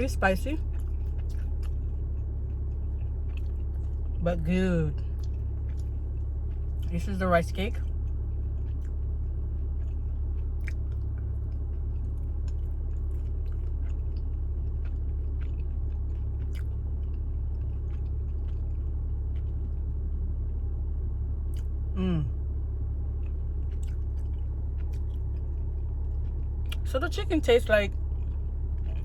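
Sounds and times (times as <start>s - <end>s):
steady low hum: 0.0s - 29.0s
chewing with mouth clicks: 0.1s - 4.2s, 5.0s - 22.0s, 22.8s - 29.0s
person humming mm: 22.0s - 22.4s.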